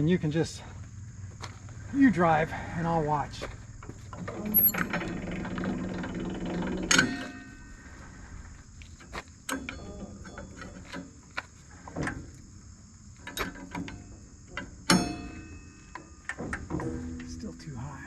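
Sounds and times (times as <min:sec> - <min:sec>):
machine hum: 0:01.4 - 0:08.8
equipment clicks and knocks: 0:13.2 - 0:17.3
loud clunk: 0:14.6 - 0:17.3.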